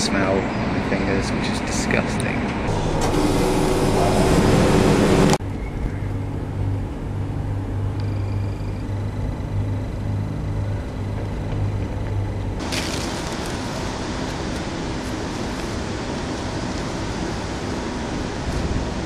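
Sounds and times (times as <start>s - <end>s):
loud rushing noise: 2.6s - 5.4s
low pulsing machine hum: 2.7s - 19.0s.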